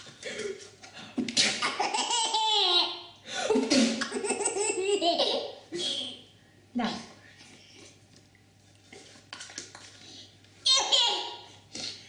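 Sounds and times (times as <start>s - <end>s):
baby laughing: 1.6s - 3.1s, 4.0s - 5.6s.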